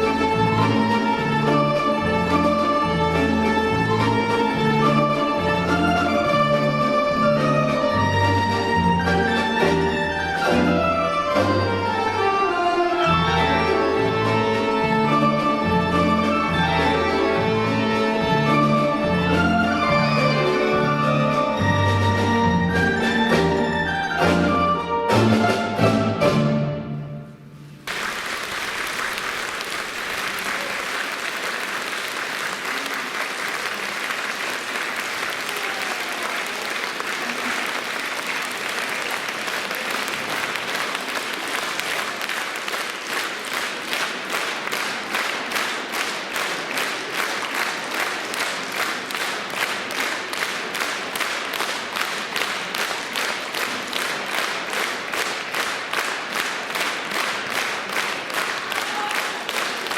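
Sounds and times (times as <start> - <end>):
rhythmic synchronised clapping: 0.0 - 12.2, 36.4 - 59.9
audience applauding: 27.8 - 59.9.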